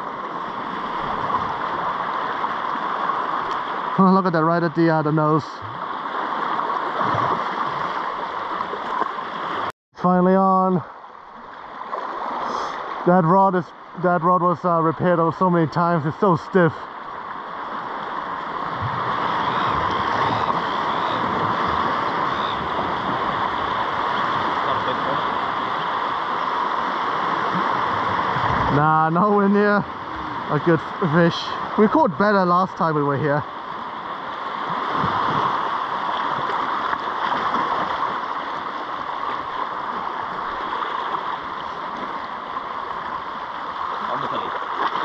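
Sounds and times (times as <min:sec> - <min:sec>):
seawater washing among rocks: 0:00.0 - 0:09.7, 0:13.9 - 0:45.0
sea surf: 0:00.0 - 0:45.0
wind buffeting microphone: 0:18.4 - 0:32.1, 0:34.6 - 0:38.2.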